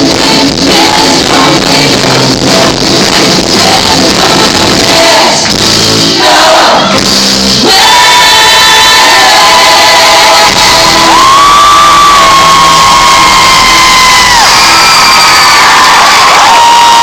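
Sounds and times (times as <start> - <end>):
person singing: 0.0 - 5.5
live rock band music: 0.0 - 8.0
crowd cheering: 7.6 - 17.0.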